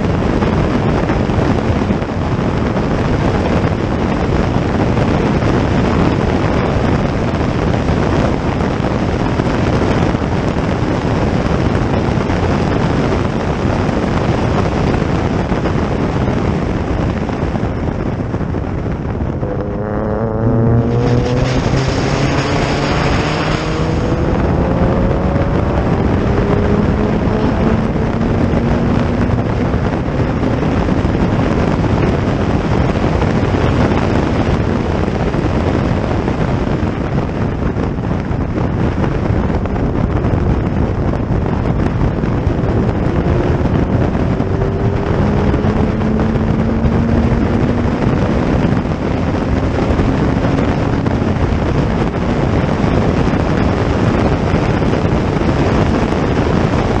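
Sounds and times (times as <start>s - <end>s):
wind noise on microphone: 0.0s - 57.0s
race car engine accelerating past: 19.4s - 30.5s, 42.7s - 51.1s.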